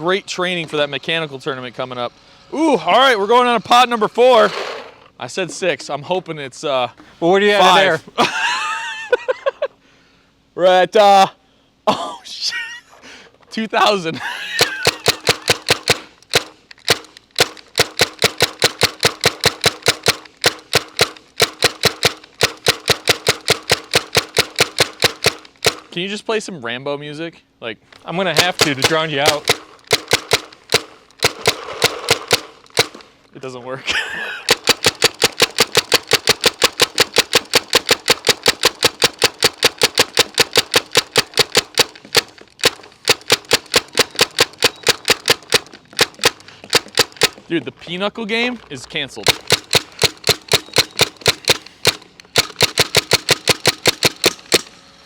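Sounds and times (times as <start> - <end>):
paintball marker firing: 14.6 - 26.0, 28.3 - 33.2, 34.4 - 47.5, 49.2 - 54.8.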